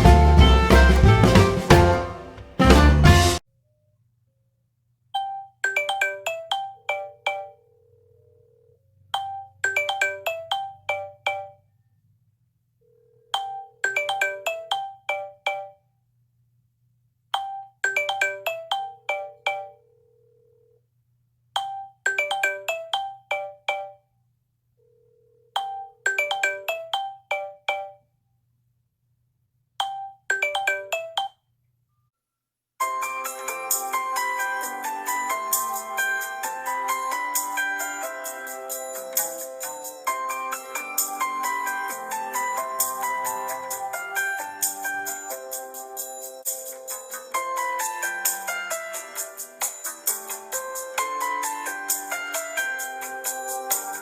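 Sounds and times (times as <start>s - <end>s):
phone ringtone melody: 5.2s - 7.8s, 9.2s - 11.6s, 13.3s - 15.8s, 17.4s - 19.9s, 21.6s - 24.0s, 25.6s - 28.0s, 29.8s - 31.4s, 32.8s - 54.0s
denser phone ringtone: 5.2s - 11.7s, 13.0s - 15.8s, 17.4s - 20.8s, 21.6s - 24.0s, 25.0s - 28.0s, 29.8s - 31.4s, 32.8s - 54.0s.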